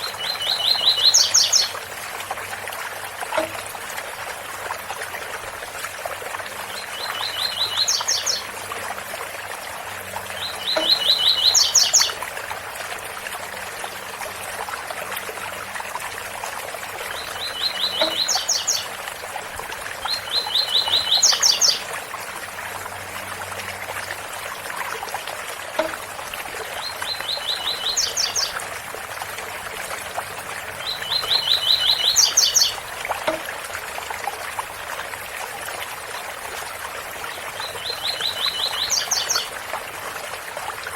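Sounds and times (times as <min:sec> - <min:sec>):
bird singing: 0:10.3 - 0:12.1, 0:17.1 - 0:18.9, 0:30.8 - 0:32.8.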